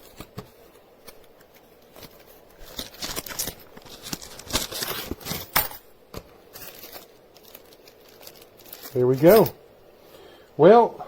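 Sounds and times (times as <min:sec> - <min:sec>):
plastic packaging crinkling and tearing: 0:01.0 - 0:05.6, 0:06.5 - 0:09.5.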